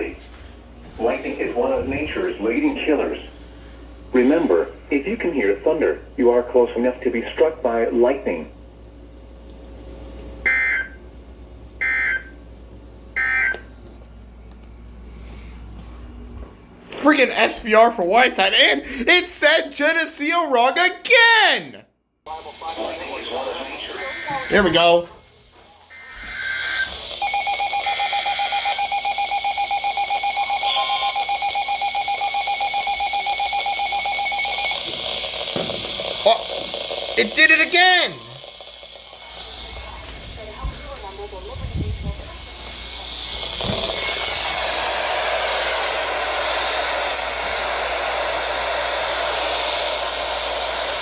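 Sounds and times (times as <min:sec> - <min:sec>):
low radio hiss: 0:00.9 - 0:08.5, 0:22.3 - 0:25.0, 0:33.2 - 0:51.0
data tone squawks: 0:26.0 - 0:38.6.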